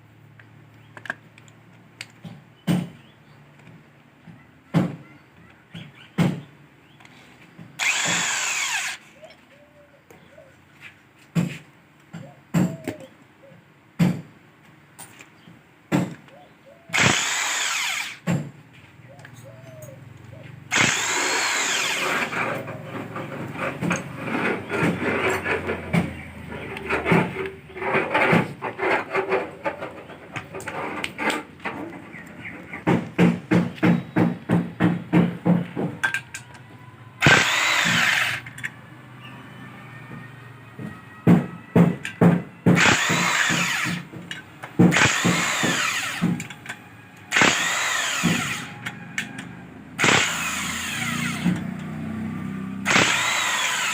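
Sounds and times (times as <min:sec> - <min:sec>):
power tool running: 0:07.8 - 0:09.1, 0:16.9 - 0:18.3, 0:20.7 - 0:26.0, 0:37.2 - 0:38.6, 0:42.8 - 0:44.1, 0:44.9 - 0:46.5, 0:47.3 - 0:49.4, 0:50.0 - 0:53.9.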